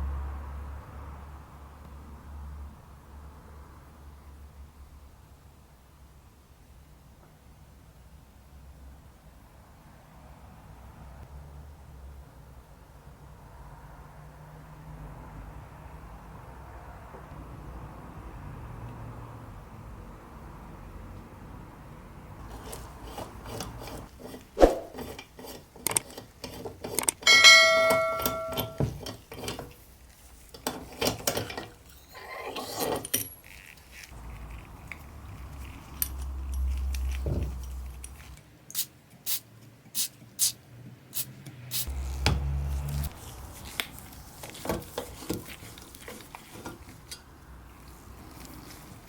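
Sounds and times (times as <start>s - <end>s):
metal parts clinking: 27.0s - 29.6s
ringing metal strike: 27.3s - 28.9s.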